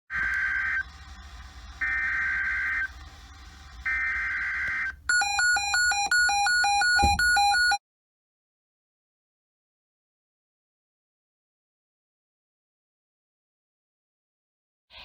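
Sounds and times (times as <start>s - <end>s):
alternating electronic beeps: 0.2s - 7.8s.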